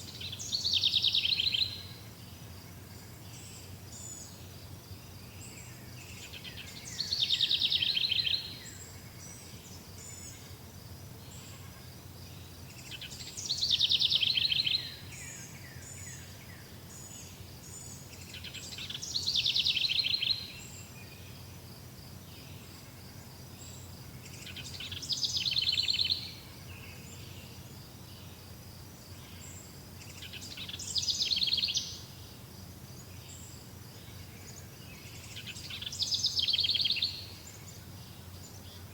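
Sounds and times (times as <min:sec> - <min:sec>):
insects chirring: 0:00.0 - 0:38.9
songbird trilling: 0:00.1 - 0:01.9, 0:30.2 - 0:32.0.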